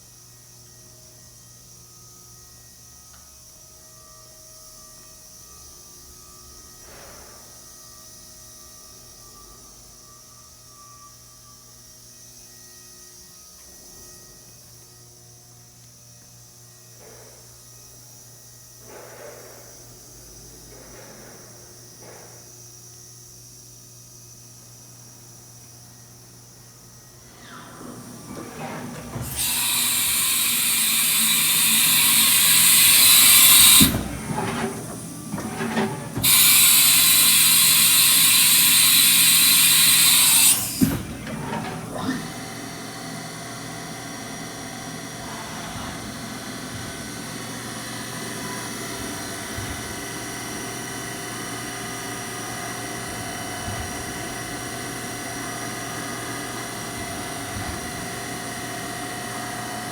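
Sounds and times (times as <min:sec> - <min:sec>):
loud machine hisses: 0:27.2 - 0:59.9.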